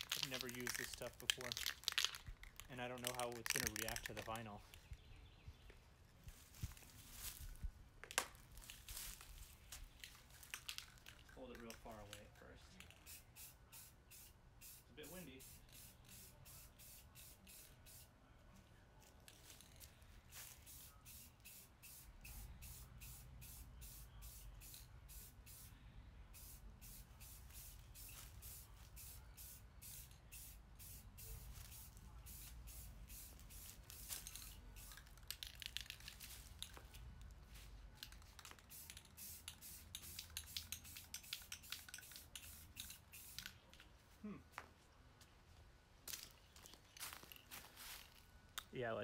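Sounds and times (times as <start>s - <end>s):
aerosol spray can hissing: 13.0s - 18.1s, 20.4s - 25.7s, 26.4s - 34.9s, 38.1s - 43.5s.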